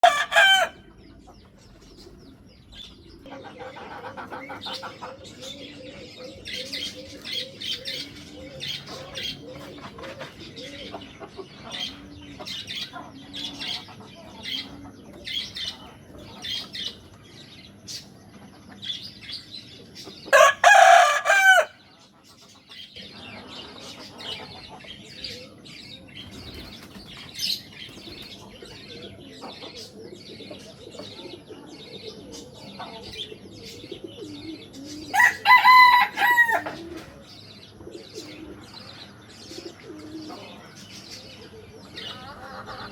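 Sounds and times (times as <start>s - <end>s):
rooster crowing: 0.0s - 0.9s, 20.3s - 21.8s, 35.1s - 36.8s
chickens clucking and chirping: 0.0s - 42.9s.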